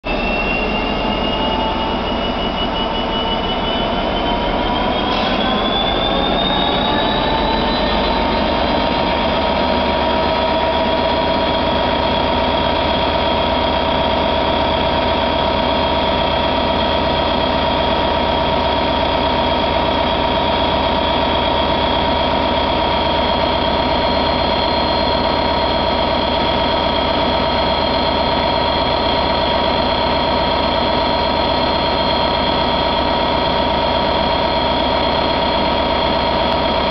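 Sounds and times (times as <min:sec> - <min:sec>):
high whine: 0:00.0 - 0:36.9
diesel locomotive engine revving: 0:00.1 - 0:36.9.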